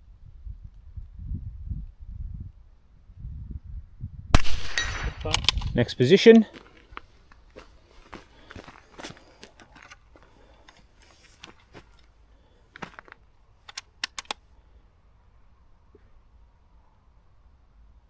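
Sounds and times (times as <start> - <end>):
rifle sharp clicks: 4.4 - 5.8, 13.7 - 14.4
light scuffs and knocks: 6.4 - 13.2.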